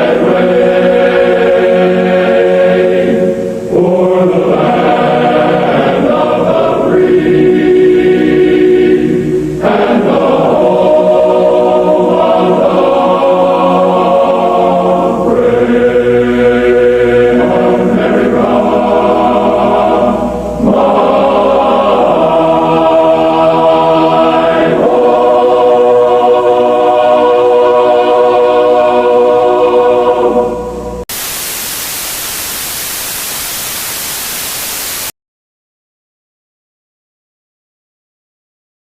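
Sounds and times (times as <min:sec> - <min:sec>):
loud white-noise static: 0:00.0 - 0:27.9, 0:29.3 - 0:35.1
choir holding long chords: 0:00.0 - 0:31.0.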